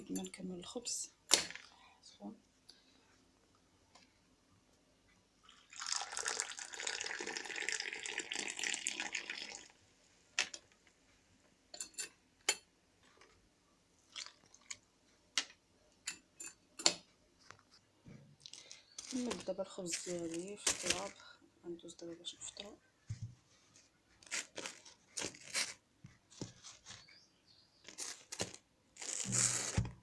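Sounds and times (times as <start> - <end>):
liquid pouring: 5.4 - 9.8, 14.1 - 14.7.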